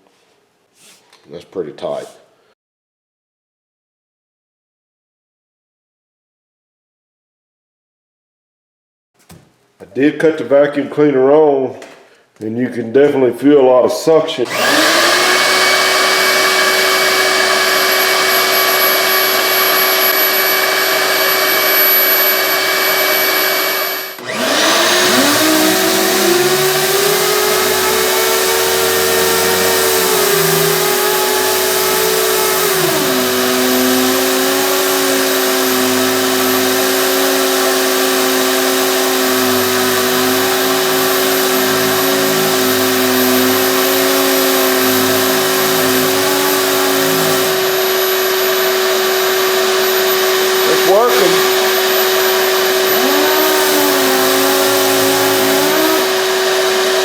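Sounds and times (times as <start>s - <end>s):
shop vac running: 14.0s - 57.0s
air sander whine: 14.4s - 57.0s.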